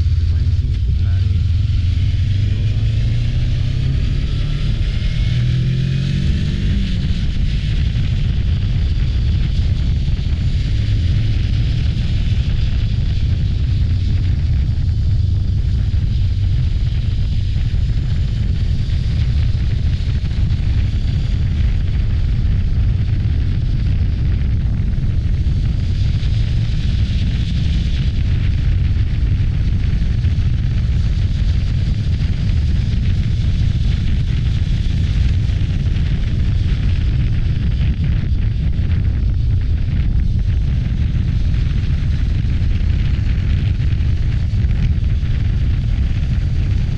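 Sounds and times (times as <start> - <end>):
motorcycle engine running: 0.0 - 46.9
wind buffeting microphone: 0.0 - 46.9.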